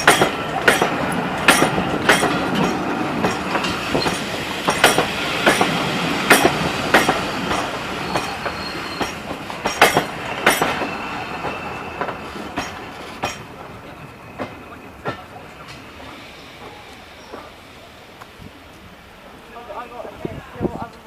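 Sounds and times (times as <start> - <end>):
train wheels clacking over rail joints: 0.0 - 18.8
high wheel squeal: 7.2 - 9.3, 9.9 - 17.8.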